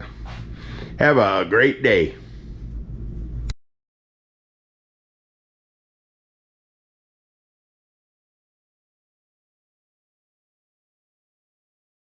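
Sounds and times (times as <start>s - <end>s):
low rumbling background noise: 0.0s - 3.6s.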